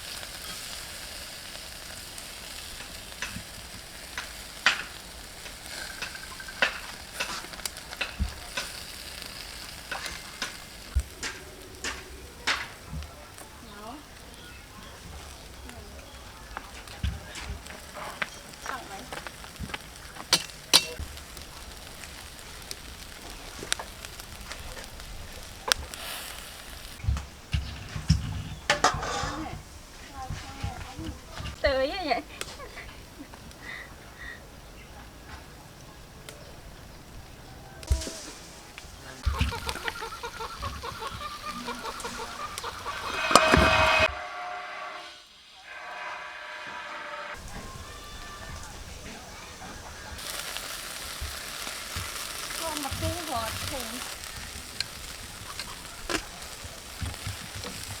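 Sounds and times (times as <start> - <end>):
meat sizzling on a grill: 0.0 - 44.1, 47.4 - 58.0
fire crackling and popping: 0.0 - 44.2, 47.3 - 58.0
chickens clucking: 37.8 - 44.1, 47.6 - 58.0.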